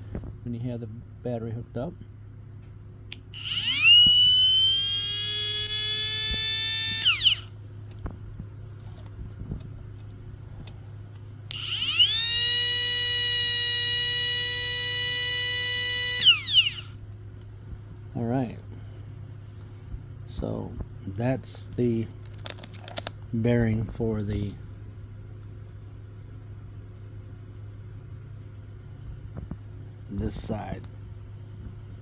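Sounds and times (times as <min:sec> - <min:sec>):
grinder motor whine: 0:03.4 - 0:07.5, 0:11.5 - 0:17.0.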